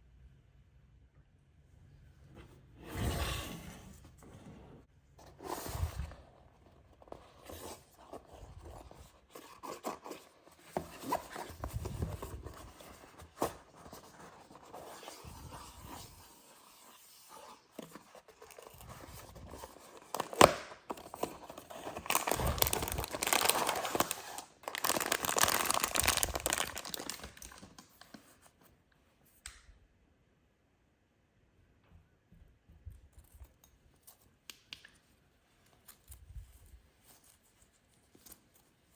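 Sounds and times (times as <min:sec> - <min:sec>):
packaging rustling and crinkling: 0:17.8 - 0:28.6
packaging tearing: 0:19.4 - 0:28.2.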